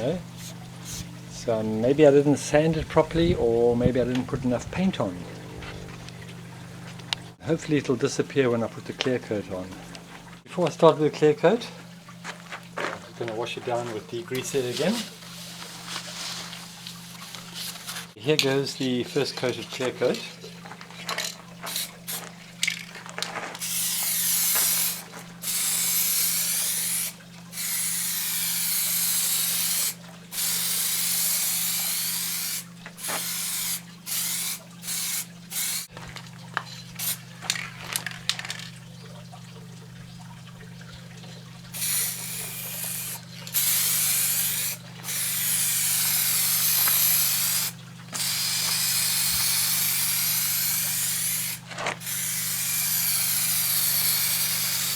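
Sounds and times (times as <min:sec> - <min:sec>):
low hum: 0:00.0 - 0:10.4
aerosol spray can hissing: 0:00.3 - 0:01.1, 0:17.1 - 0:18.2, 0:21.7 - 0:22.3, 0:23.6 - 0:35.9, 0:37.0 - 0:37.2, 0:41.8 - 0:54.9.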